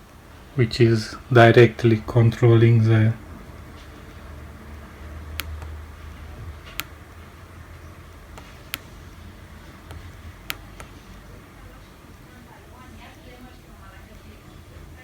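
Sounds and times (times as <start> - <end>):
steady low hum: 0.0 - 15.0
push-button clicks: 5.4 - 5.8, 8.3 - 11.2.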